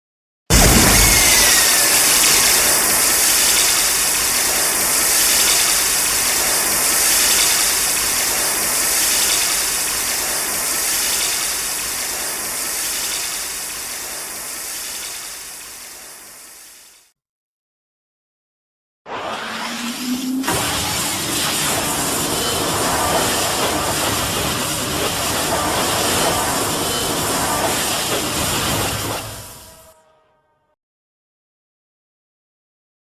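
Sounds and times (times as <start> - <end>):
falling tone: 0.5 - 4.4, 19.1 - 23.6
mechanical rushing hiss: 0.5 - 17.1, 19.6 - 29.9.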